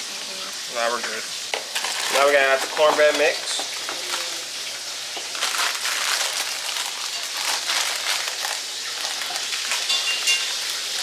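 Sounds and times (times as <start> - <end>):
chicken frying in hot oil: 0.0 - 11.0
packet crinkling and rustling: 1.7 - 4.5, 5.2 - 11.0.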